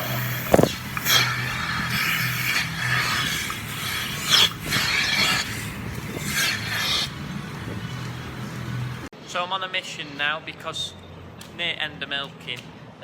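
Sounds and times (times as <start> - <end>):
hissing surges: 0.0 - 7.7
milking machinery humming: 0.0 - 9.1.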